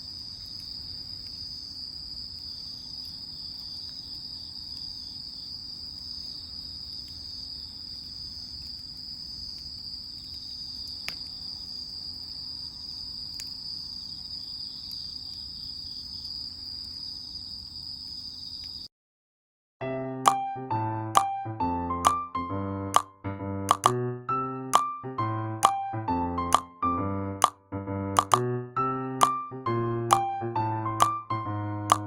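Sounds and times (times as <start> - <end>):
crickets chirping: 0.0 - 18.9
faint clicks: 9.6 - 11.3.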